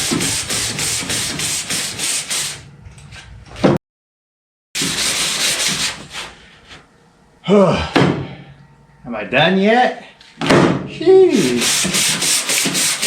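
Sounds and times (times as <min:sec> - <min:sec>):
sandpaper rubbed by hand: 0:00.0 - 0:02.6, 0:04.8 - 0:06.4, 0:11.4 - 0:13.0.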